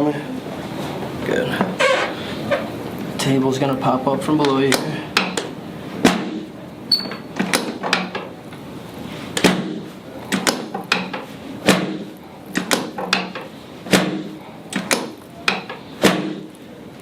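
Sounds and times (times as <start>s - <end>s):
adjusting table clacking: 6.9s - 8.4s, 10.3s - 16.5s.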